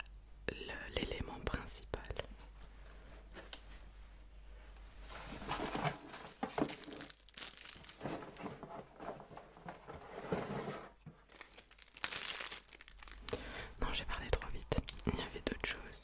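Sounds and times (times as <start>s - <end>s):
packaging crinkling and tearing: 6.2s - 8.7s, 11.2s - 15.8s.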